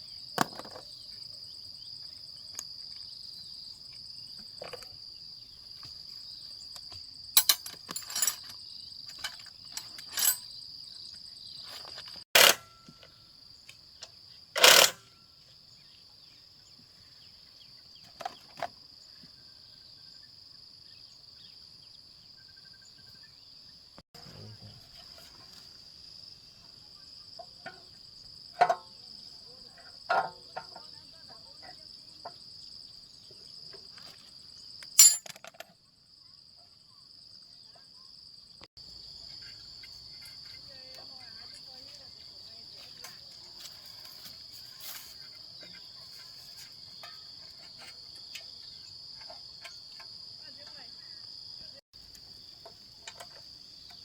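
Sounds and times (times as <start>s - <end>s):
insects chirring: 0.0s - 54.0s
hand tools clinking on metal: 7.4s - 10.5s, 12.4s - 13.1s, 14.6s - 15.0s, 34.8s - 35.7s.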